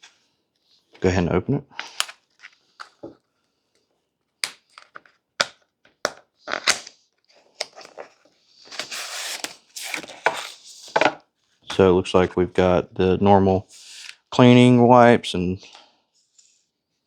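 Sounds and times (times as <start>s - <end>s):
packaging rustle: 7.6s - 11.0s.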